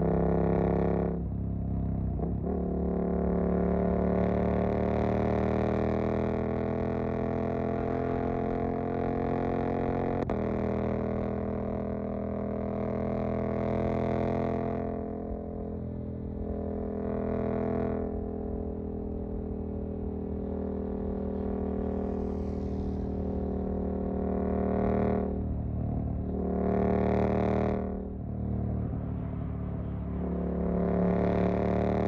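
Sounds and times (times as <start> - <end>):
motorcycle engine exhaust: 16.3 - 32.0.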